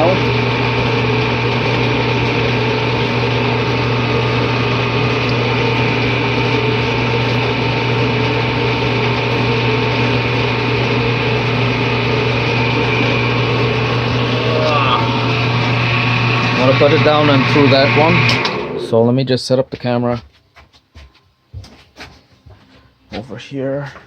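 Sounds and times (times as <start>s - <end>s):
machine motor humming and whirring: 0.0s - 19.1s.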